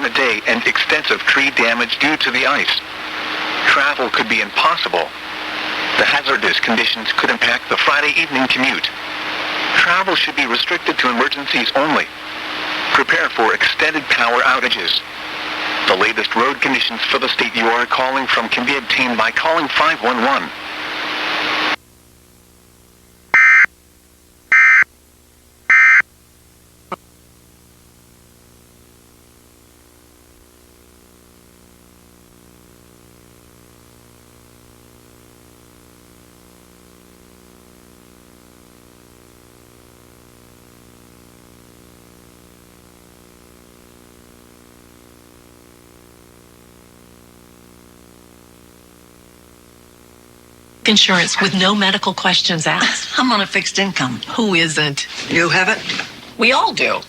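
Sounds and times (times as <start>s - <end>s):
low electrical hum: 0.0s - 57.0s
digital data tone bursts: 23.4s - 23.7s, 24.5s - 24.8s, 25.7s - 26.0s.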